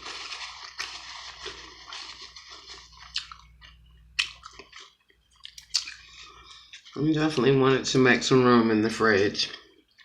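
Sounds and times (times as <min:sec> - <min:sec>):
chewing and biting food: 0:00.1 - 0:07.0.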